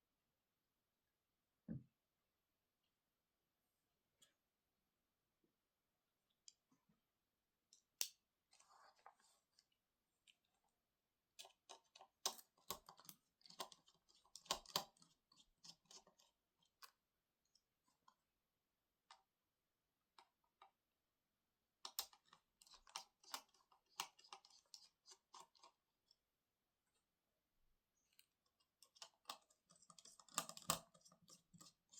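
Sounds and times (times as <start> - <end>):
small clicks and taps of tools: 28.1 - 31.8.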